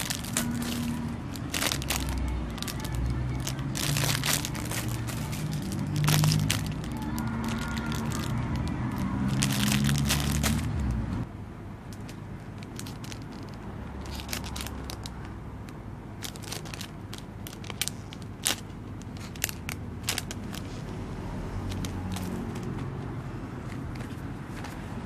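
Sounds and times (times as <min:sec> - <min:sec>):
plastic packaging crinkling: 0:00.0 - 0:10.8, 0:12.5 - 0:15.3, 0:16.2 - 0:20.9.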